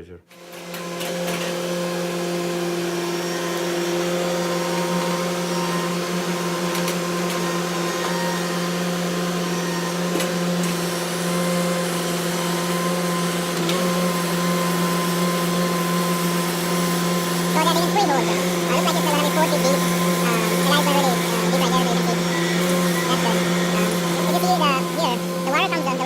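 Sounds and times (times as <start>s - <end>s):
motor droning: 2.8s - 26.0s.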